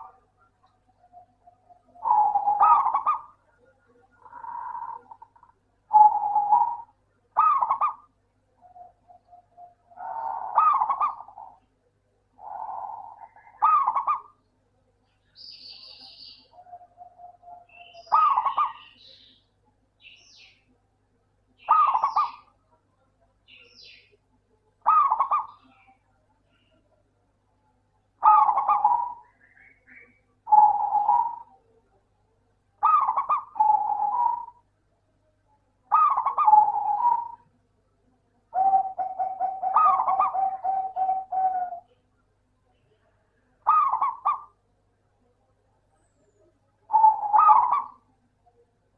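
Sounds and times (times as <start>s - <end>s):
dove cooing: 0.0s - 11.6s, 12.4s - 14.4s, 15.7s - 19.3s, 21.6s - 22.5s, 24.8s - 26.0s, 28.2s - 31.6s, 32.8s - 34.7s, 35.9s - 37.5s, 38.5s - 42.0s, 43.6s - 44.6s, 46.0s - 48.2s
faint bird chirps: 0.0s - 20.8s, 21.5s - 48.9s.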